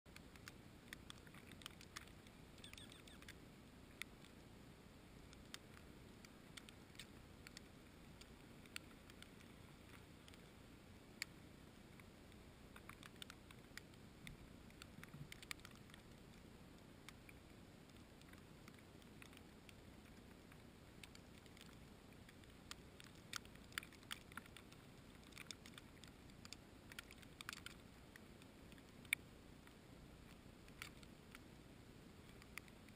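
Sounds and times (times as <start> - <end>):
faint small clicks and taps: 0.1 - 4.5, 5.2 - 31.6, 32.2 - 32.9
low steady hiss: 0.1 - 32.9.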